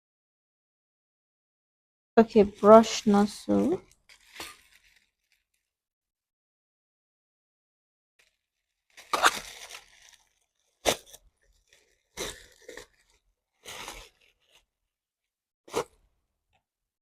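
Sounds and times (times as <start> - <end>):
plastic packaging crinkling: 2.2 - 5.7, 8.2 - 14.7.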